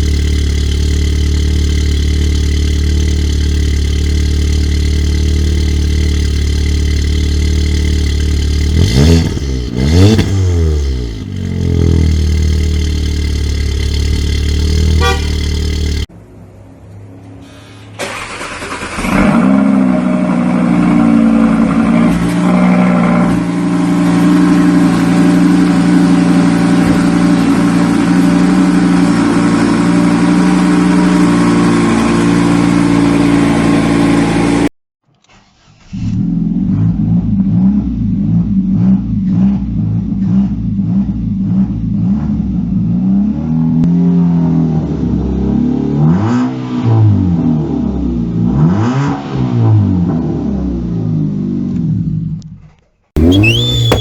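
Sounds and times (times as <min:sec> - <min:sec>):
car engine fast idle: 0:00.0 - 0:08.9, 0:53.2 - 0:54.0
car engine idling roughly and revving: 0:00.0 - 0:16.1, 0:19.9 - 0:34.7, 0:53.2 - 0:54.0.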